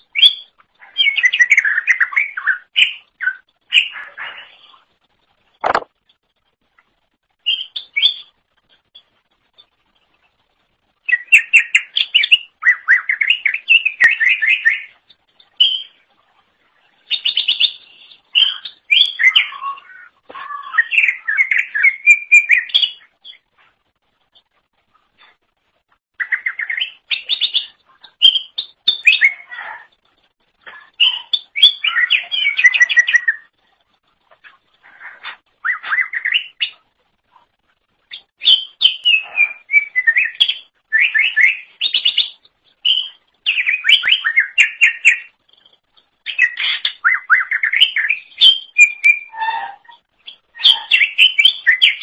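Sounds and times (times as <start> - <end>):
bird chattering and whistling: 17.1 - 23.4, 26.2 - 29.9, 30.7 - 33.5, 34.4 - 36.8, 38.1 - 45.7, 46.3 - 52.0.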